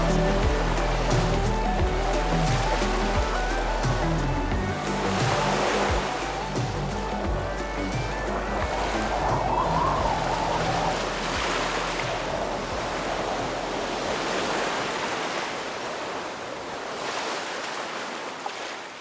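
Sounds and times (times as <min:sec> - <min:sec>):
wind on microphone: 0:00.0 - 0:16.5
surf washing onto a beach: 0:00.0 - 0:19.0.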